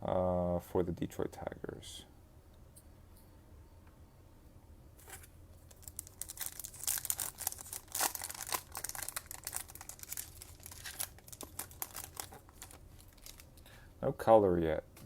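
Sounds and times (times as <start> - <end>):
foil wrapper tearing and crinkling: 5.0 - 13.6.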